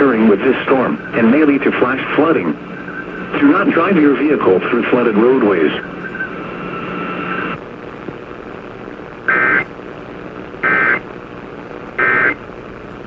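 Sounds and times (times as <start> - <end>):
warbling digital data tones: 0.0 - 4.3, 5.2 - 7.6
background hiss: 0.0 - 13.0.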